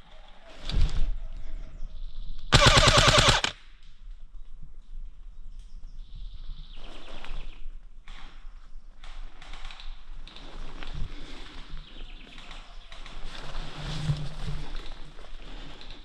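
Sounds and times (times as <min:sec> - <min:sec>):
airsoft gun full-auto burst: 0:02.5 - 0:03.6.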